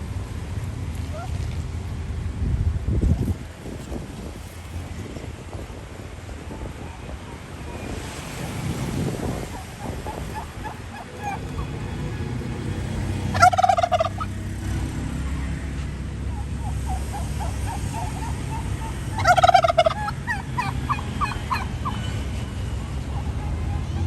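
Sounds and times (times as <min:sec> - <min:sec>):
turkey gobbling: 0:08.5 - 0:14.5, 0:16.3 - 0:22.1
soft peeping calls: 0:09.1 - 0:14.3, 0:16.4 - 0:22.0.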